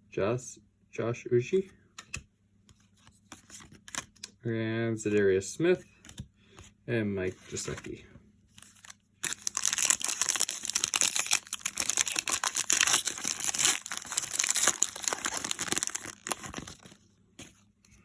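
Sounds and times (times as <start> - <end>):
foil wrapper crinkling: 8.6 - 17.0.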